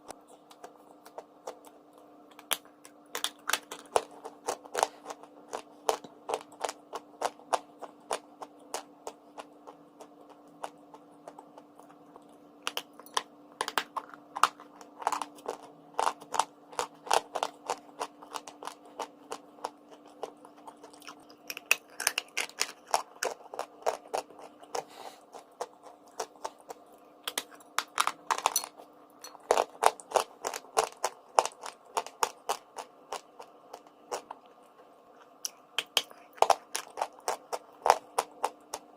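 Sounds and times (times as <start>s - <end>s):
person chewing crunchy chalk: 0.0s - 38.9s
steady low hum: 0.0s - 38.9s.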